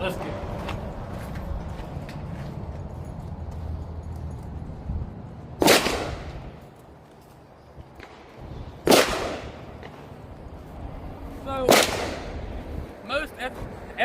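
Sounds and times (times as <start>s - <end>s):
gunshots with reverberation: 5.6s - 6.6s, 8.0s - 10.1s, 11.7s - 12.5s.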